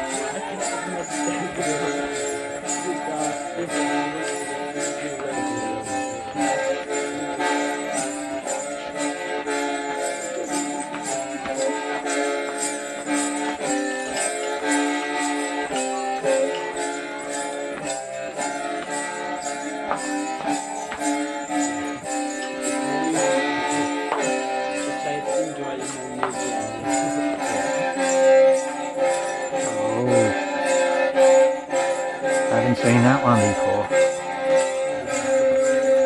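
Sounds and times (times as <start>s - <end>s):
background music with steady beat: 0.0s - 36.0s.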